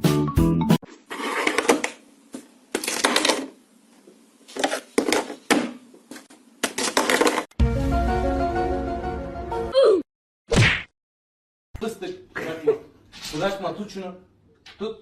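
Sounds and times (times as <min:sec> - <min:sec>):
music: 0:00.0 - 0:00.8, 0:07.6 - 0:09.8.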